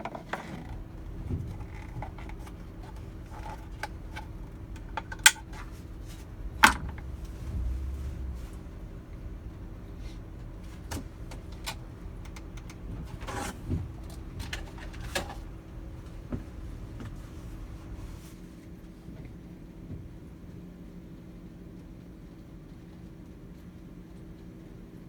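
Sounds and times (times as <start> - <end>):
steady low hum: 0.0 - 21.5
tools and car parts clicking: 1.6 - 5.7, 6.6 - 7.1.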